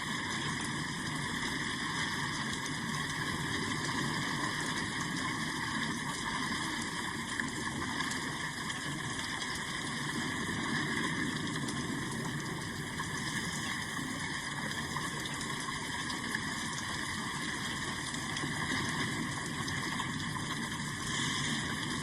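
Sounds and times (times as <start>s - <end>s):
steady rain falling: 10.8s - 16.8s.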